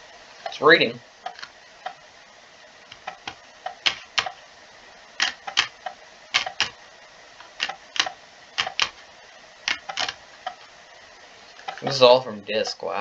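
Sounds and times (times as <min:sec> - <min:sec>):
floppy drive head clicking: 0:02.9 - 0:04.4, 0:05.2 - 0:06.8, 0:07.4 - 0:09.0.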